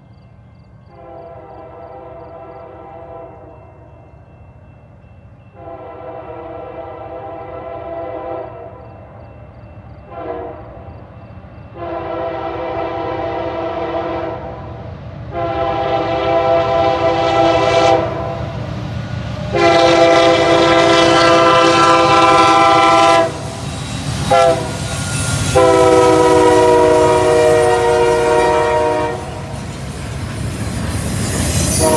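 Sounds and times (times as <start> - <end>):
locomotive air horn blasts: 0.9 - 3.5, 5.6 - 8.7, 10.1 - 10.8, 11.8 - 14.7, 15.3 - 18.5, 19.5 - 29.5
locomotive engines rumbling: 4.8 - 31.9.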